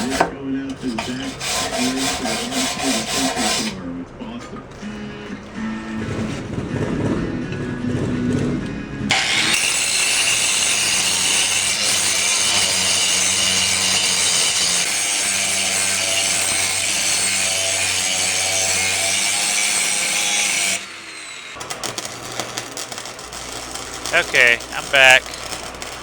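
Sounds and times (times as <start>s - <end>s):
harsh hissing welding noise: 17.8s - 26.0s.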